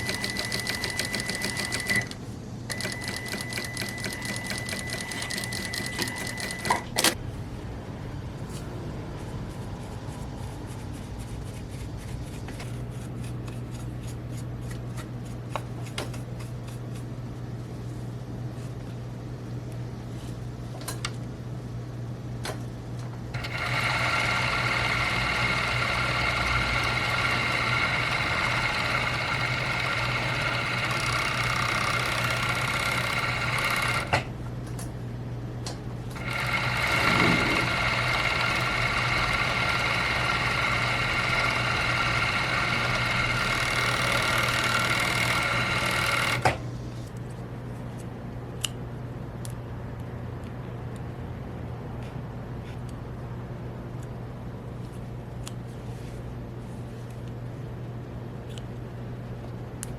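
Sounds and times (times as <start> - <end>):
sewing machine hum and ticking: 0.0 - 7.2, 23.3 - 34.3, 36.1 - 46.6
sewing machine stitching whine: 0.0 - 7.2, 23.4 - 34.3, 36.2 - 46.6.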